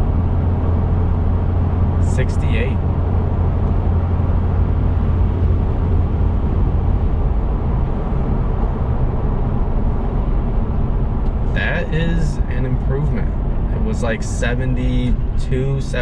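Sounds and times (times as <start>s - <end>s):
low drone: 0.0s - 16.0s
road noise inside car cab: 0.0s - 16.0s.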